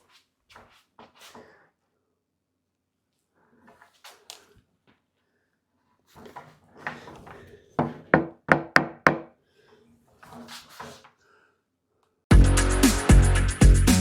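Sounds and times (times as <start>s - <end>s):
knocks on hollow cabinet: 7.8s - 9.3s.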